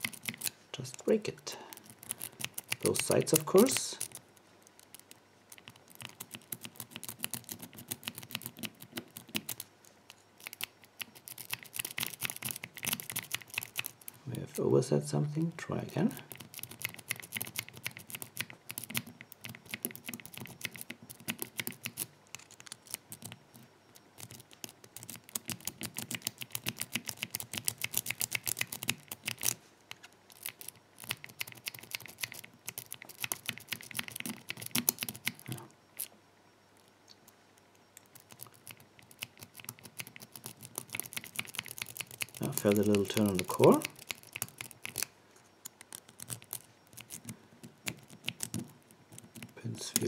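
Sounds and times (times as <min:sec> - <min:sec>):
lock pick raking padlock pins: 0:41.2 - 0:45.0.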